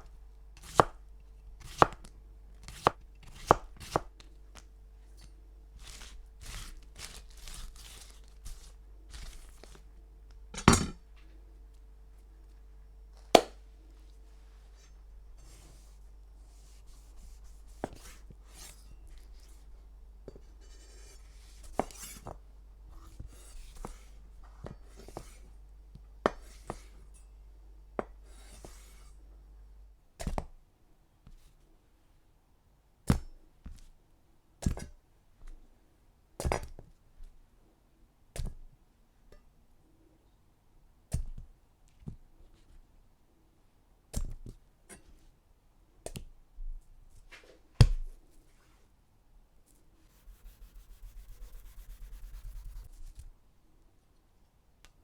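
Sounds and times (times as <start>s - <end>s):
knife chopping: 0.6s - 1.0s, 1.6s - 4.2s, 5.8s - 9.4s, 50.1s - 52.9s
knife slicing on cutting board: 0.6s - 1.0s, 1.6s - 2.0s, 2.6s - 4.1s, 5.8s - 9.4s, 50.1s - 53.2s.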